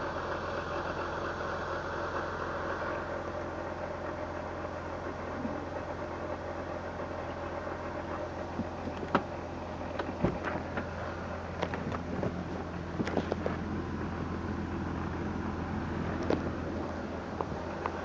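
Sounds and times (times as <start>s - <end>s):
car engine idling: 0.0s - 18.0s
sharp engine clicks: 16.1s - 18.0s.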